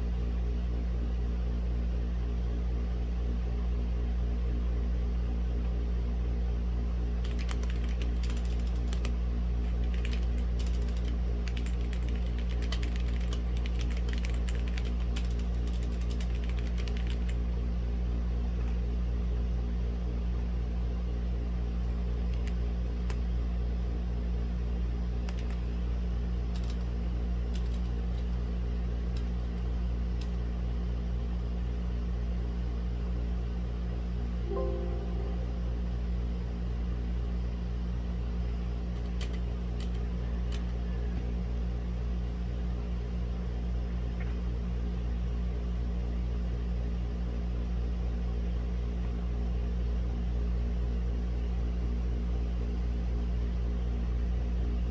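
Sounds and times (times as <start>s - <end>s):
mechanical keyboard typing: 7.1s - 17.4s, 21.9s - 23.2s, 25.2s - 25.7s, 26.5s - 26.9s, 27.5s - 28.4s.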